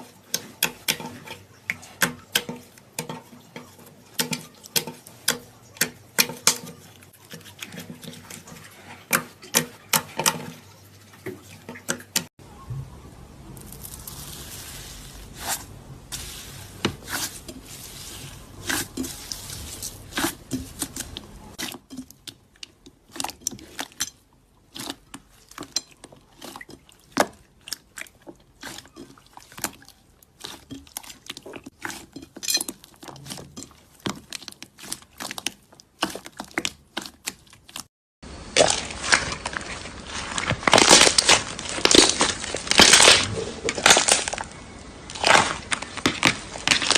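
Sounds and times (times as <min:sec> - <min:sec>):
slime crunching and crackling: 0:13.6 - 0:24.0, 0:24.6 - 0:46.9.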